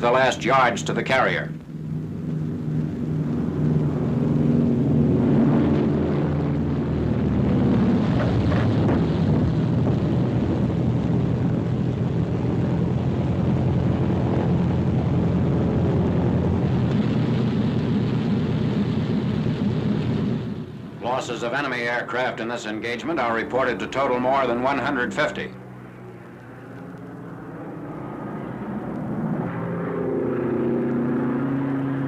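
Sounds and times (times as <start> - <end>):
propeller aircraft engine drone: 0.0 - 32.0
rushing noise: 0.0 - 32.0.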